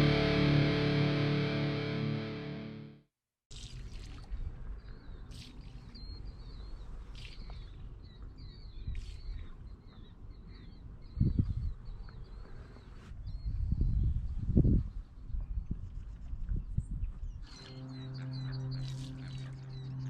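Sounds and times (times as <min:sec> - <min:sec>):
steady low rumble: 0:00.0 - 0:02.5
small birds chirping: 0:03.9 - 0:14.2, 0:14.9 - 0:20.0.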